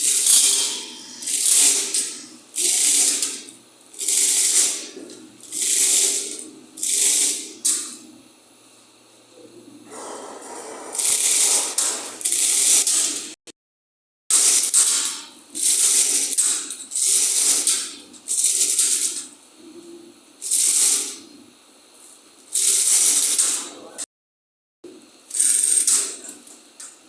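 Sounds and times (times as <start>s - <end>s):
milling machine cutting steel: 0.0s - 7.7s.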